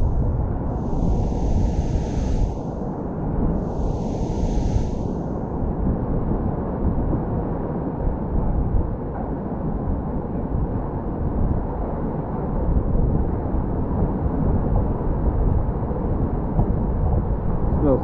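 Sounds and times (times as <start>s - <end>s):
steady low rumbling: 0.0s - 5.8s.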